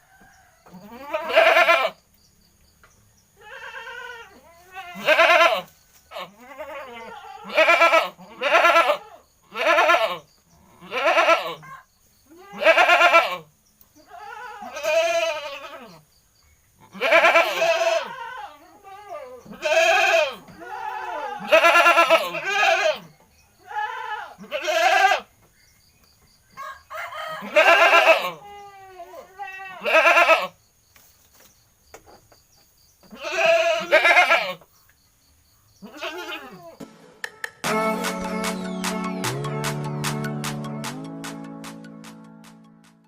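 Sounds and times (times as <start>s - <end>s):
goat bleating: 0.7s - 2.0s, 3.4s - 16.0s, 16.8s - 25.3s, 27.4s - 30.6s, 33.1s - 34.6s, 35.8s - 36.8s.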